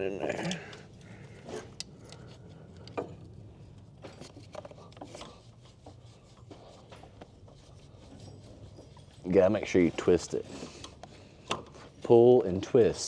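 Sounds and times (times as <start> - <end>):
tool scraping inside metal bore: 4.1 - 13.0.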